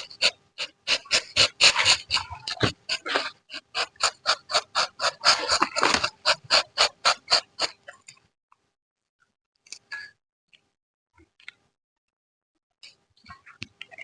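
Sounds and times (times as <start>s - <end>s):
quick sharp scraping strokes: 0.0s - 7.8s.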